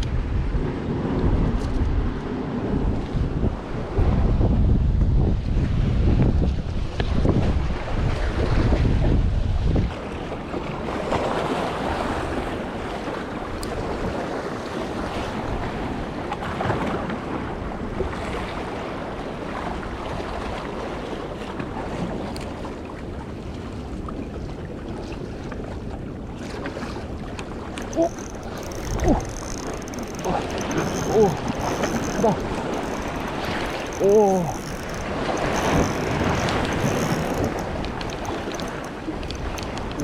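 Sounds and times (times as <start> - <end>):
wind rumbling on microphone: 0.0 - 10.7, 25.9 - 40.0.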